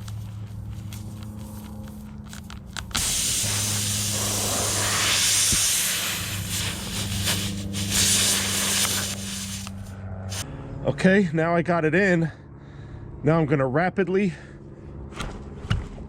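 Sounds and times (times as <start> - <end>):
air hissing from tire: 2.9 - 10.4.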